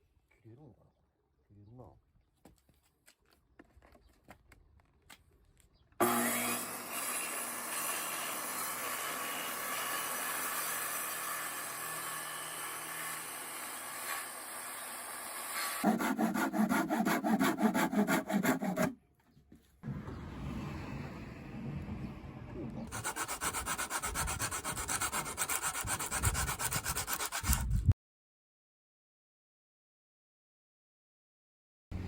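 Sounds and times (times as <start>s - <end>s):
saw rasping: 6.0s - 19.0s, 22.9s - 27.8s.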